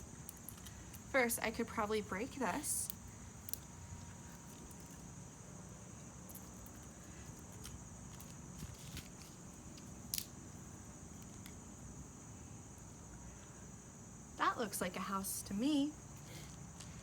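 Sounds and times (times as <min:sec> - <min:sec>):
twigs clicking being handled: 0:00.0 - 0:05.2, 0:06.0 - 0:11.7
crickets trilling: 0:00.0 - 0:17.0.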